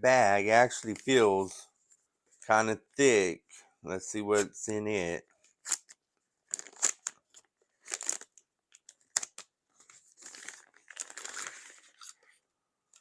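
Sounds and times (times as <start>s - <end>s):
plastic bag crinkling and rustling: 5.6s - 12.4s.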